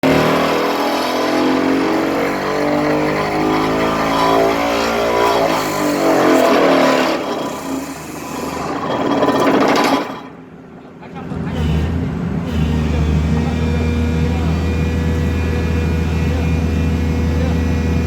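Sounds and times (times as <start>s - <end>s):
vibratory pile driver humming: 0.0s - 10.7s
diesel engine running: 0.0s - 18.0s.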